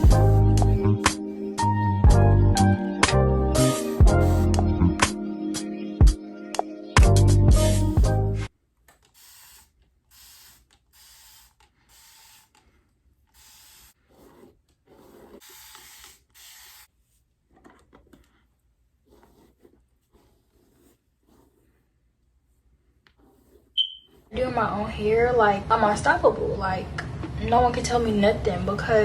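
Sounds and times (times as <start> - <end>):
hair spray hissing bursts: 3.6 - 4.6, 9.1 - 12.6, 13.4 - 14.0, 15.4 - 16.9.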